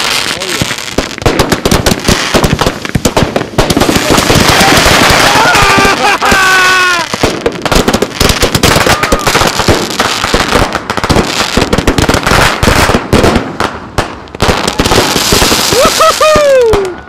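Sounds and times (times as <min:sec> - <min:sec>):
fireworks bangs and crackles: 0:00.0 - 0:17.0
firework whistle: 0:15.5 - 0:17.0.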